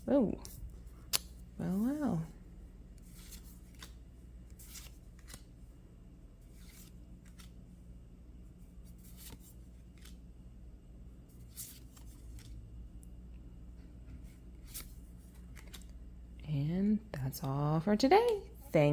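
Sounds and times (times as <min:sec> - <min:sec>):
faint steady hum: 0:00.0 - 0:18.9
trading cards swishing: 0:03.0 - 0:05.5, 0:06.4 - 0:07.6, 0:08.8 - 0:10.2, 0:11.3 - 0:12.6, 0:14.2 - 0:16.0.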